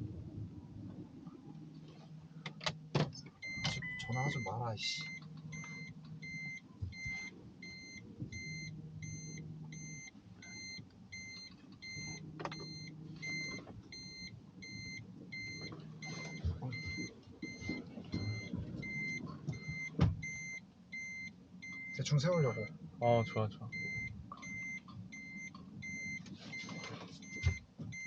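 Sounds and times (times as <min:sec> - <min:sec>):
car warning beeps: 0:02.4 - 0:28.0.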